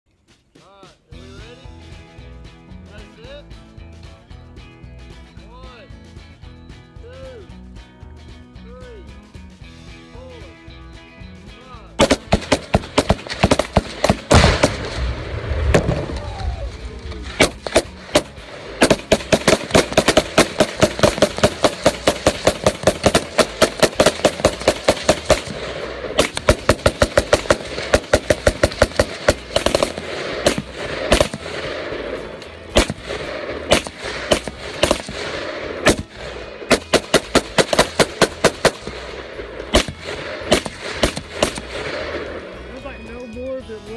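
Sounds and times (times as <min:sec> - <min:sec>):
rifles firing: 0:12.0 - 0:42.6.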